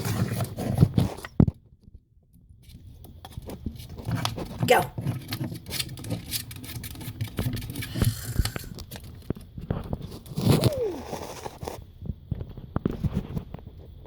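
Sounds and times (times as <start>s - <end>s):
bird scratching on crinkly surface: 2.6s - 11.8s.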